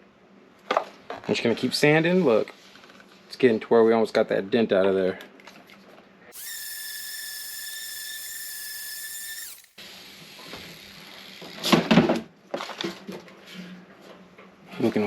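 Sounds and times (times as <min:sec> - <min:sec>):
sander high whine: 0:06.4 - 0:10.0.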